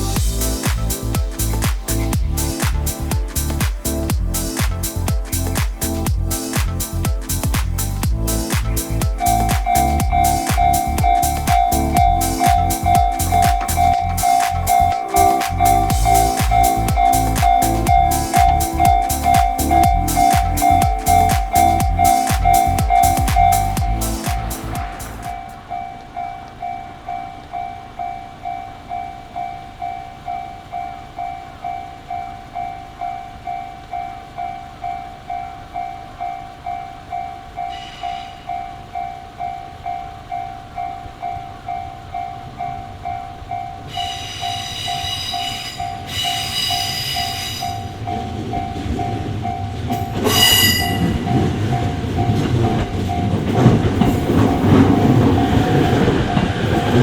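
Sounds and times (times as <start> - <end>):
train rumble and wheel clatter: 0.0 - 28.9, 31.6 - 57.0
level-crossing alarm bell dinging: 9.0 - 57.0
train horn blasts: 43.9 - 48.3, 50.2 - 51.4.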